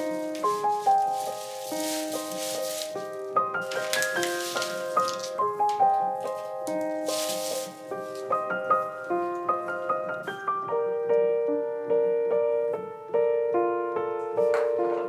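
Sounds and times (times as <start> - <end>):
soft hiss: 0.0 - 11.4
gentle solo piano: 0.0 - 15.0.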